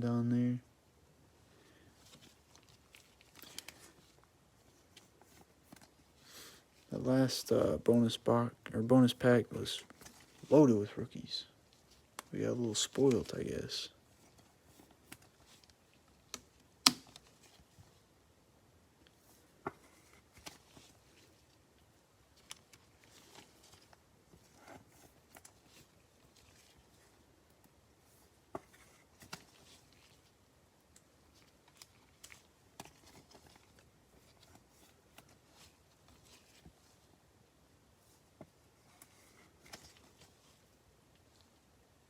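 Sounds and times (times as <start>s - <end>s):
trading cards clicking and rustling: 12.0s - 17.6s.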